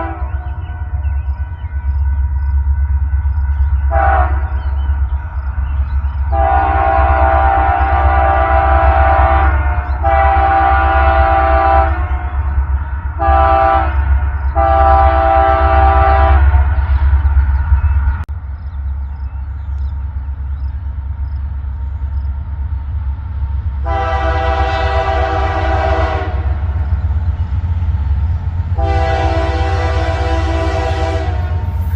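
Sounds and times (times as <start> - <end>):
locomotive air horn: 0.0 - 1.1, 3.9 - 4.6, 6.3 - 12.4, 13.2 - 16.8, 23.8 - 26.7, 28.7 - 31.9
diesel locomotive rumble: 0.0 - 31.9.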